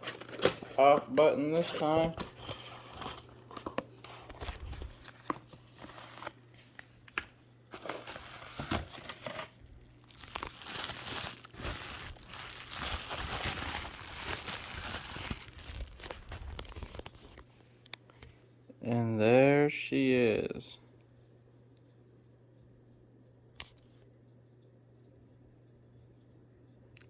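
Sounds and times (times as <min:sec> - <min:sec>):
wrapping rustling: 0:00.0 - 0:06.9, 0:07.7 - 0:17.4.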